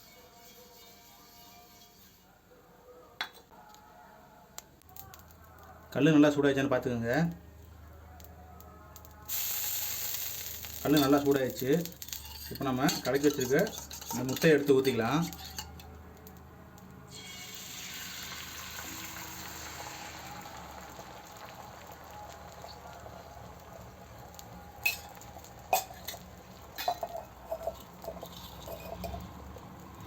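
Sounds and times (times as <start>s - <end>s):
eggs sizzling in hot oil: 4.8s - 30.0s
sharp utensil clinks: 26.8s - 29.3s.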